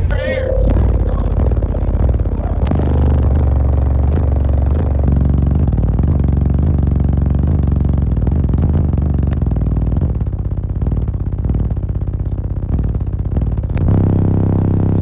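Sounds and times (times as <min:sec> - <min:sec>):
bass-heavy music through subwoofers: 0:00.0 - 0:09.6.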